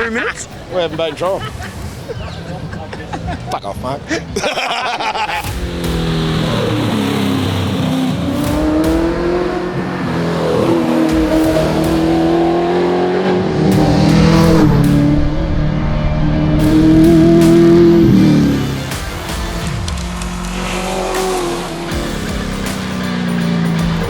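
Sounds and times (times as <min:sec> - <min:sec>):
rally car engine accelerating: 0:05.4 - 0:24.0.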